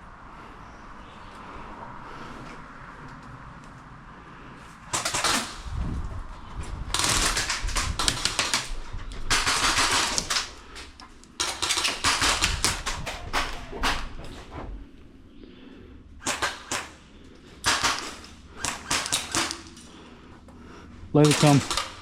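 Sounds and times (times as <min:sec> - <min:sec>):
airsoft guns firing bursts: 0:04.9 - 0:05.6, 0:06.9 - 0:10.6, 0:11.4 - 0:14.1, 0:16.2 - 0:20.1, 0:21.2 - 0:22.0.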